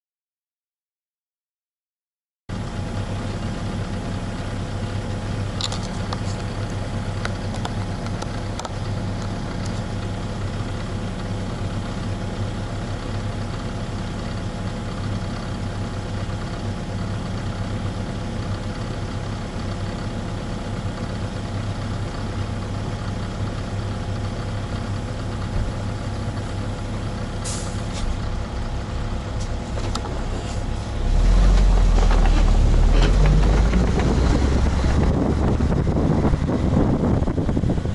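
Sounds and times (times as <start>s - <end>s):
diesel engine idling: 2.5s - 37.9s.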